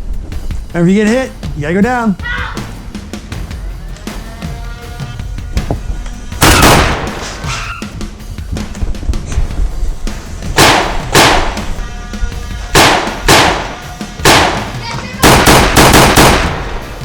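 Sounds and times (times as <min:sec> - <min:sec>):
background music: 0:00.0 - 0:17.0
sharp shot-like bangs: 0:06.4 - 0:07.7, 0:10.5 - 0:11.9, 0:12.7 - 0:17.0.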